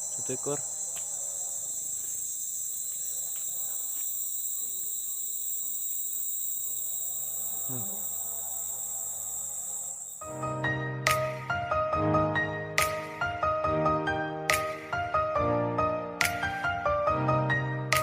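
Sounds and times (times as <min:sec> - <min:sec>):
shrill insect chorus: 0:00.0 - 0:11.6.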